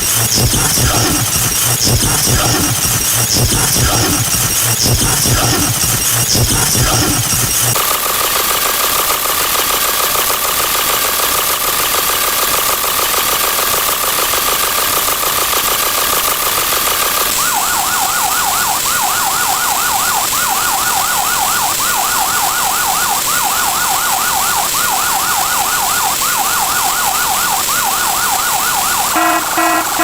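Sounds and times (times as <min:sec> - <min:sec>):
stepped beeping pattern: 0:00.0 - 0:07.8, 0:17.4 - 0:30.0
siren fast yelp: 0:17.3 - 0:30.0
steady tone: 0:29.0 - 0:30.0.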